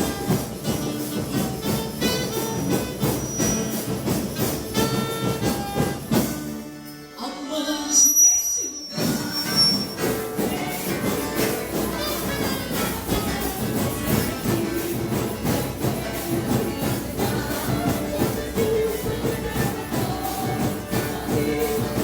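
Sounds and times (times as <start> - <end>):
drum kit steady beat: 0.0 - 6.7, 9.1 - 22.0
instrumental worship music: 0.0 - 22.0.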